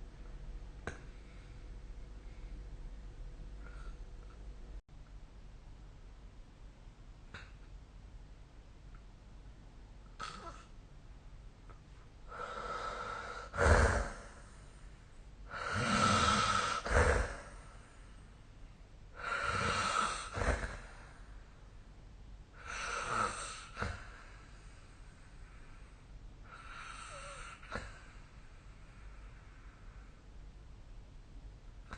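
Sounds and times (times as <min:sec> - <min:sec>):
person snoring: 0:12.3 - 0:14.5, 0:15.5 - 0:17.7, 0:19.2 - 0:21.1, 0:22.6 - 0:24.1, 0:26.6 - 0:28.0.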